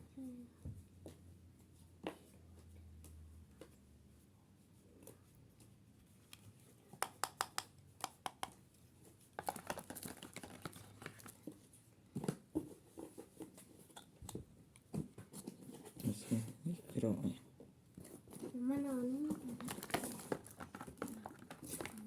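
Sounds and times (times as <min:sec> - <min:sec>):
packaging crinkling and rustling: 0:09.3 - 0:11.7, 0:18.1 - 0:22.0.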